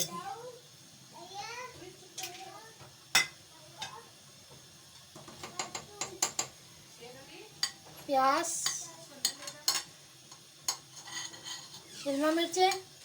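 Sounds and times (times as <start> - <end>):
utensils clinking against pot: 3.1 - 4.0, 5.2 - 6.6, 7.6 - 7.9, 8.6 - 12.9.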